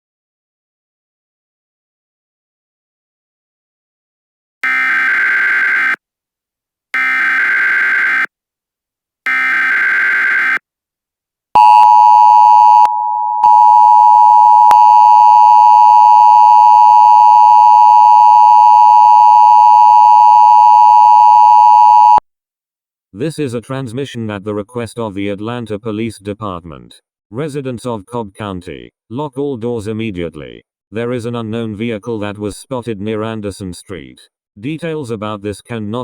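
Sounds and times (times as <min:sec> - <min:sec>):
two-tone attention signal: 0:11.6 - 0:22.2.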